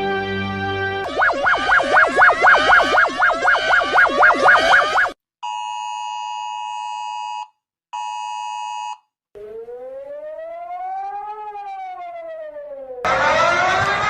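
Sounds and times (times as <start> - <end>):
siren rising in pitch: 1.0 - 5.2, 9.4 - 14.0.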